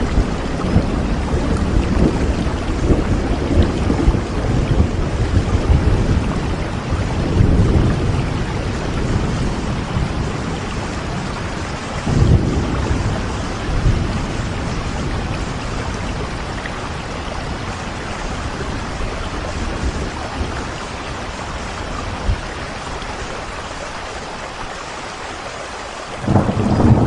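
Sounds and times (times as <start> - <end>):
low rumble of thunder: 0.0 - 23.8, 26.1 - 27.0
steady rain falling: 0.0 - 27.0.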